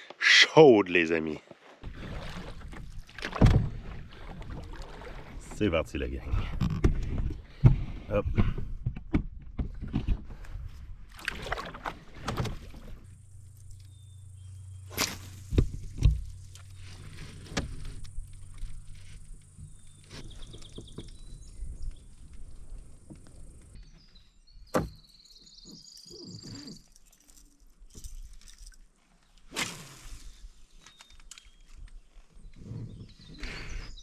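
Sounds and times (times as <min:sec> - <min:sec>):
low background hum: 0:11.5 - 0:20.1.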